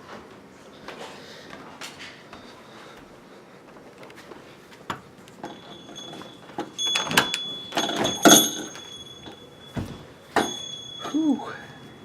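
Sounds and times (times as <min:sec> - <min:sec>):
front door clicking open: 0:05.3 - 0:10.9
thin steady whistle: 0:10.5 - 0:12.0.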